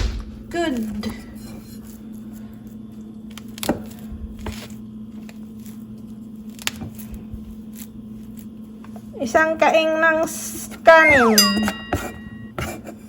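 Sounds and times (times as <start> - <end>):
kitchen items knocking and clicking: 0.0 - 1.6
steady low hum: 0.0 - 12.5.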